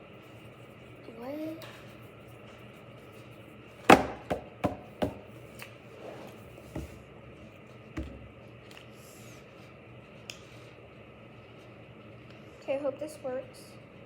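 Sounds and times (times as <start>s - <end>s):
taps on tabletop: 3.9s - 5.3s, 8.0s - 8.2s.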